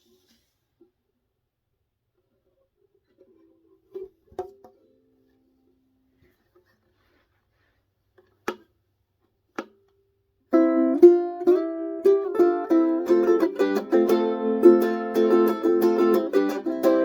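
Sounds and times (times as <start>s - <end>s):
ukulele strummed chords: 10.5s - 17.0s.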